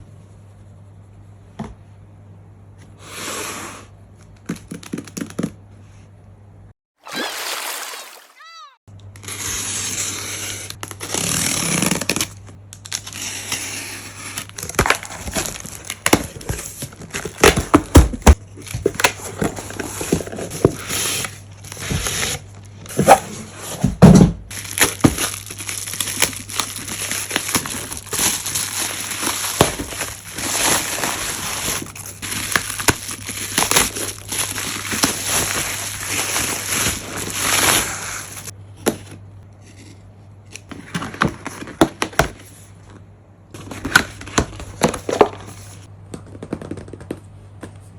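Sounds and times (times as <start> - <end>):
packaging crinkling: 14.4 - 20.8, 24.5 - 38.5.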